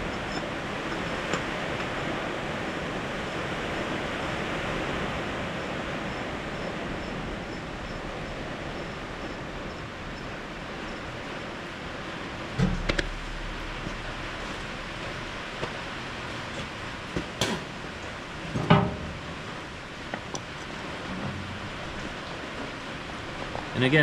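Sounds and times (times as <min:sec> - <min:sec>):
sharp knocks: 0:12.5 - 0:17.8.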